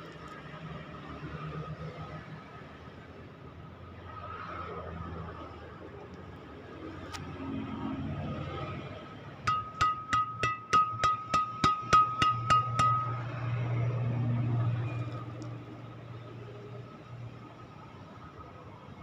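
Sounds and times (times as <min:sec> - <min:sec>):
racket strings pinging when tapped: 0:09.5 - 0:13.4.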